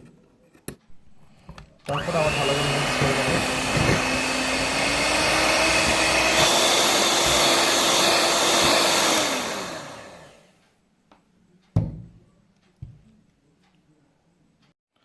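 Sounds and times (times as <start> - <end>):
electric mixer motor running: 1.9 - 10.5.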